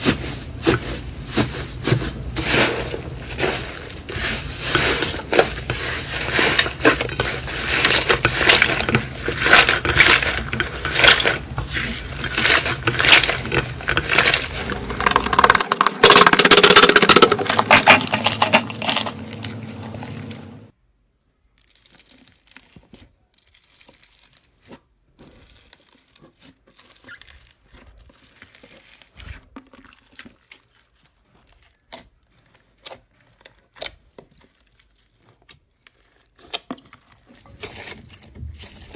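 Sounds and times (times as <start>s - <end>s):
slime crackling and popping: 0.2s - 19.7s, 21.6s - 29.3s.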